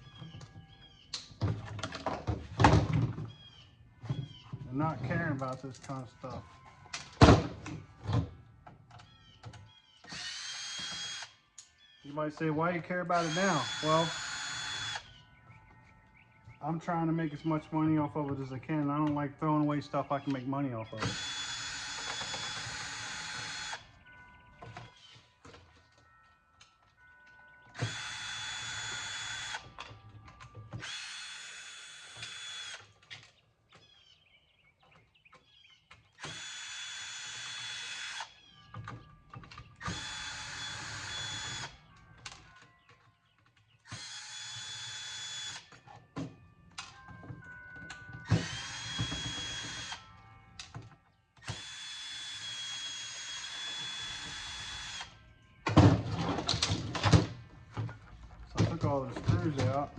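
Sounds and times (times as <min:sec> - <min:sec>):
power drill backing out screws: 0:12.4 - 0:15.2, 0:20.2 - 0:23.8, 0:27.8 - 0:33.4, 0:36.1 - 0:58.0.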